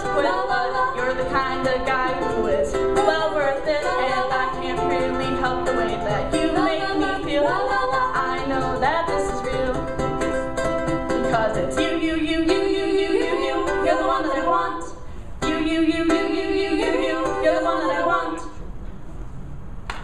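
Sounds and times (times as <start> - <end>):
ukulele: 0.0 - 18.7
person singing: 11.1 - 18.5.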